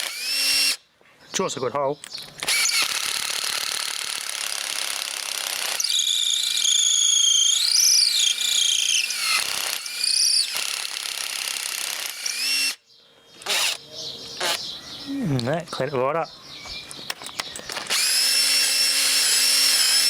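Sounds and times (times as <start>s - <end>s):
cordless drill whining: 0.0s - 0.8s, 2.4s - 12.8s, 13.4s - 13.8s, 17.5s - 20.0s.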